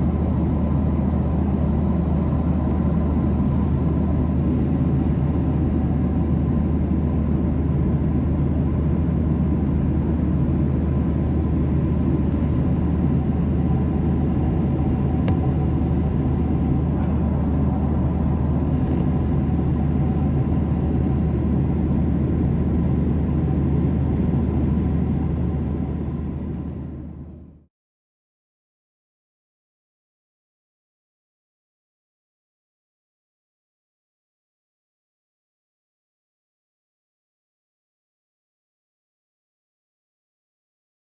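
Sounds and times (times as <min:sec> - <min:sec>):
jet engine and airflow rush: 0:00.0 - 0:27.6
low hum: 0:10.2 - 0:22.5.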